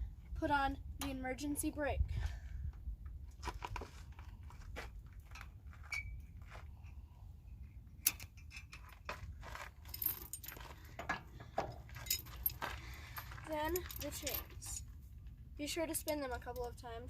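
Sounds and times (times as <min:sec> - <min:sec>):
metal hitch hardware clinking: 0:07.9 - 0:15.0.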